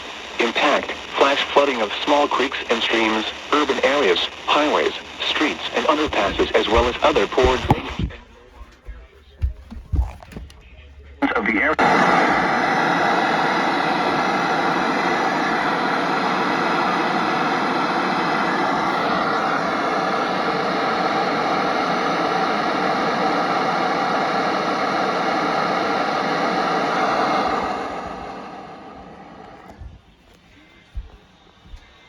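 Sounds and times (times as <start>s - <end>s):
loud rushing hiss: 2.7s - 8.1s.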